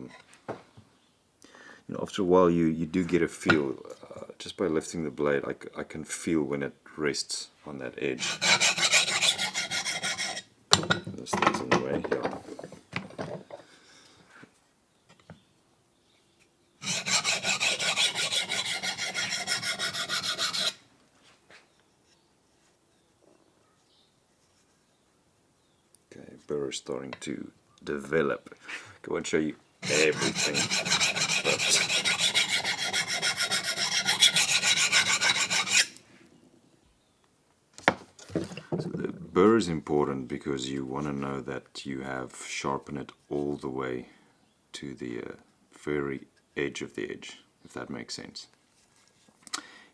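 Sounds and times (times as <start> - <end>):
knife scraping on sharpening hone: 8.2 - 10.5, 16.8 - 20.8, 29.8 - 36.0.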